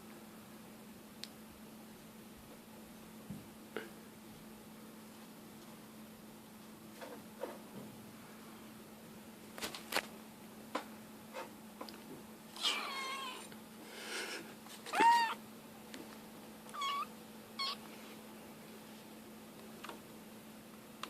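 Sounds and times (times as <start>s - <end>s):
kitten mewing: 12.6s - 13.5s, 14.8s - 15.4s, 16.7s - 17.8s.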